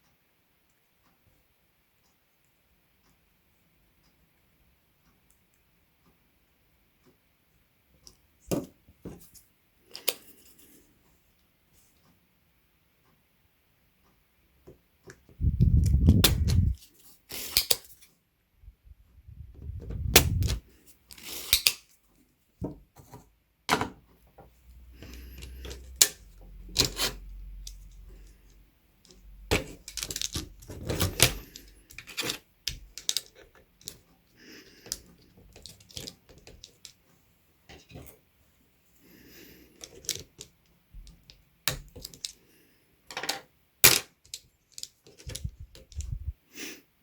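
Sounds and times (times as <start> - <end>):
low handling thumps: 19.4 - 20.6
tools clicking and tapping on circuit board: 24.0 - 34.2.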